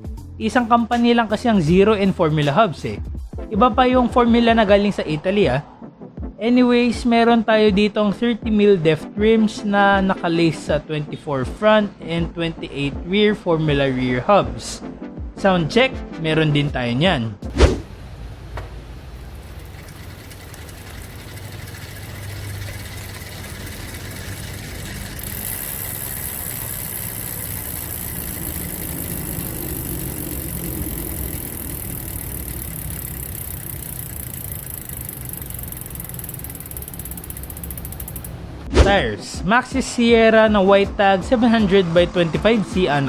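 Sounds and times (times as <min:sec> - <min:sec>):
bike hub ratcheting clicks: 0:18.6 - 0:38.5.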